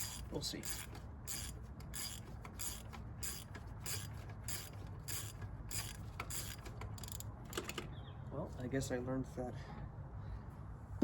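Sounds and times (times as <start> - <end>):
ratchet wrench clicking: 0.0 - 7.7.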